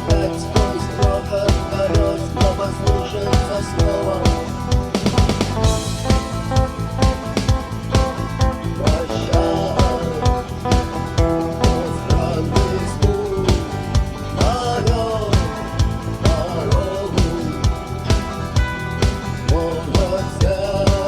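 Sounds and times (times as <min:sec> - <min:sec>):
drum-kit beat: 0:00.0 - 0:21.0
instrumental rock music: 0:00.0 - 0:21.0
sliding lead melody: 0:01.6 - 0:14.8.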